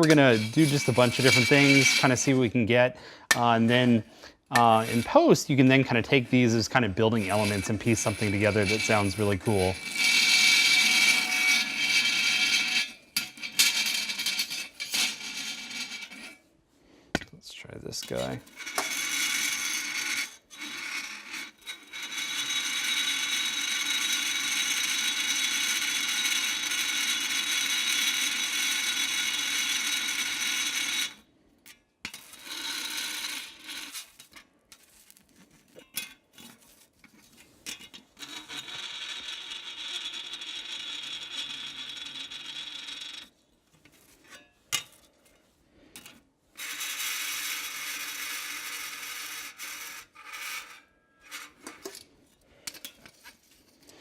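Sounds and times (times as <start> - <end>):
metal ringing on dry ice: 0.0 - 2.4, 7.2 - 16.4, 18.1 - 31.2.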